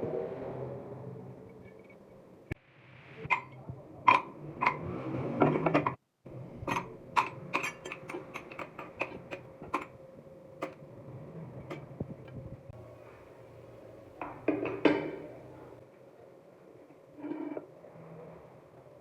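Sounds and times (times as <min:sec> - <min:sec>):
metal parts clinking: 0:06.6 - 0:09.9.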